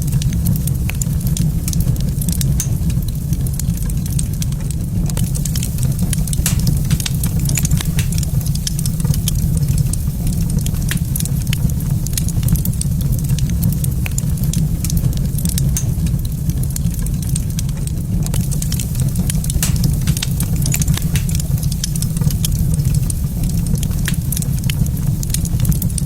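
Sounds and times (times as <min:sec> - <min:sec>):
low rumble of fire: 0:00.0 - 0:26.0
wood fire crackling: 0:00.0 - 0:26.0
sharp pops of fire: 0:05.1 - 0:16.6, 0:18.2 - 0:25.9.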